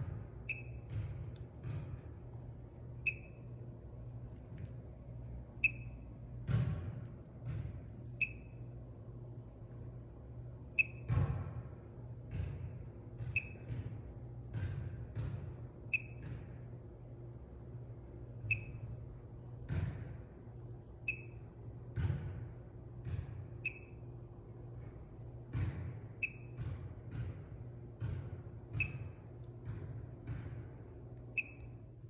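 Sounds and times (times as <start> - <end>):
alarm keypad beeping: 5.6 - 6.0.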